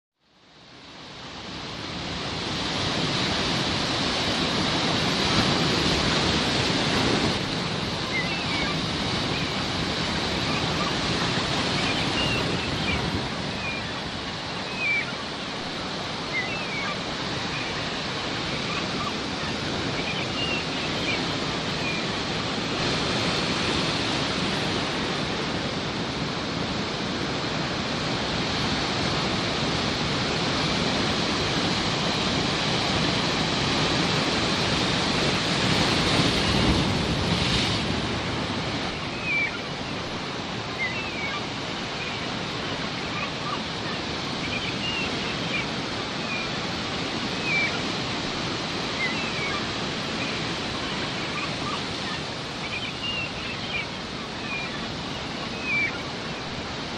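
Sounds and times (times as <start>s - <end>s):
sea waves washing in: 0.5s - 56.9s
seagull calls: 8.0s - 22.2s, 39.0s - 40.0s, 40.7s - 46.6s, 47.2s - 48.0s, 48.8s - 56.1s.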